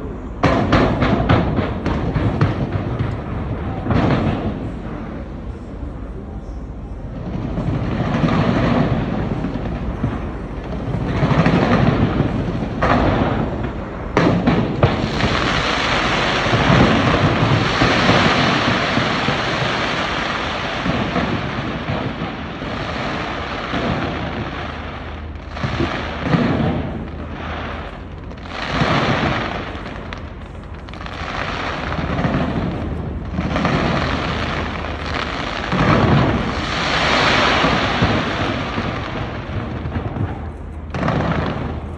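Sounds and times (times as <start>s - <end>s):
sharp firework cracks: 0.0s - 5.0s, 7.4s - 41.9s
deep firework booms: 0.0s - 5.5s, 7.1s - 41.9s
dense rushing noise: 7.0s - 41.9s.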